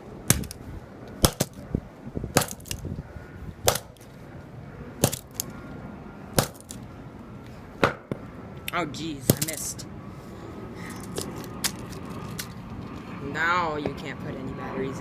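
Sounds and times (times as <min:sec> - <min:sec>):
sledgehammer striking phone: 0:00.3 - 0:00.6, 0:01.2 - 0:01.6, 0:02.3 - 0:02.8, 0:03.6 - 0:04.0, 0:05.0 - 0:05.4, 0:06.4 - 0:06.8
plastic pieces rattling: 0:11.0 - 0:12.6.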